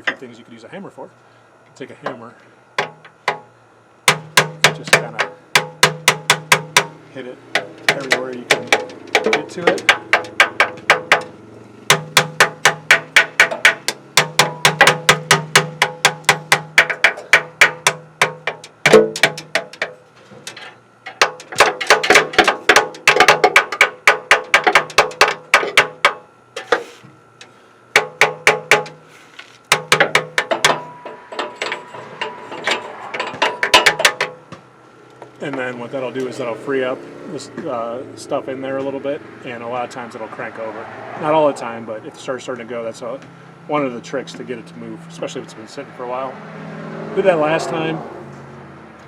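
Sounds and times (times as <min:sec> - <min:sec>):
hammer tapping on metal: 0:02.8 - 0:03.5, 0:04.1 - 0:11.3, 0:11.9 - 0:26.8, 0:27.9 - 0:29.0, 0:29.7 - 0:34.6.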